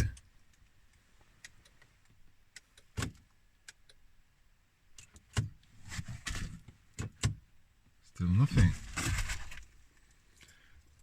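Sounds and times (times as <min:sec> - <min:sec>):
clicks and knocks inside car: 0:02.7 - 0:03.8, 0:04.9 - 0:07.6.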